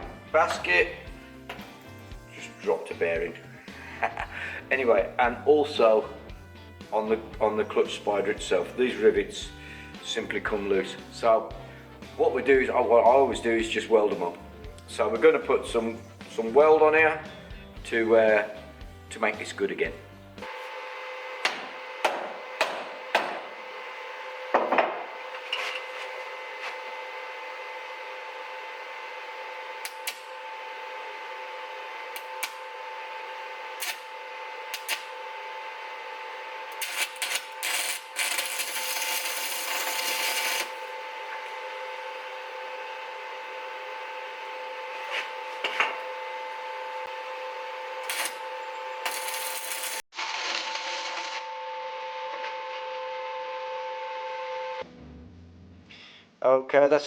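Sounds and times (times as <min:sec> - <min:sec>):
welding arc bursts: 0:29.8 - 0:30.5, 0:32.0 - 0:35.6, 0:36.6 - 0:41.1, 0:47.9 - 0:51.5.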